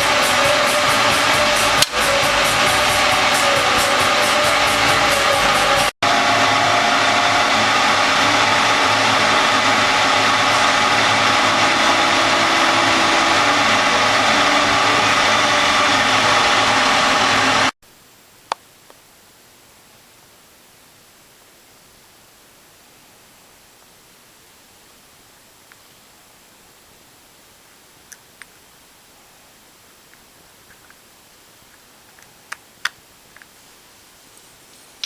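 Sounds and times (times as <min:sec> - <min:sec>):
welding arc hissing: 0:00.0 - 0:13.1.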